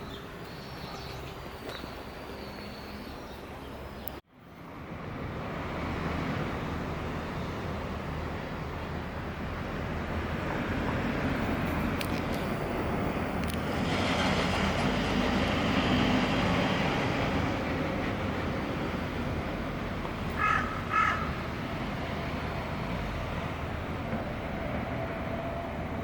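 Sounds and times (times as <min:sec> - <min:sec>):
vehicle passing: 0:09.6 - 0:26.0
crow cawing: 0:20.4 - 0:21.4.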